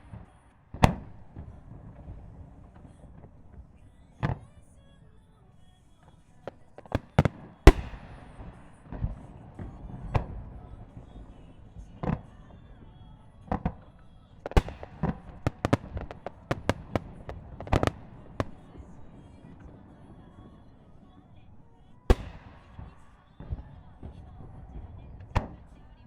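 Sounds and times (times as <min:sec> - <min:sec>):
firework shells bursting: 0:06.5 - 0:10.5, 0:13.5 - 0:20.8, 0:22.1 - 0:23.6.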